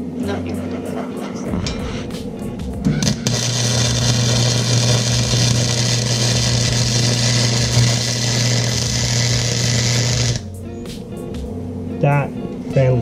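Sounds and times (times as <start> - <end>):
welder arc hissing buzz: 1.6 - 10.6.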